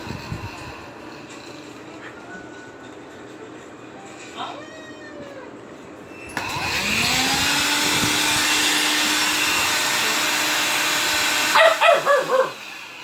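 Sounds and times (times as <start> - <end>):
vacuum cleaner motor hum: 6.3 - 13.0
dog barking: 11.5 - 12.6.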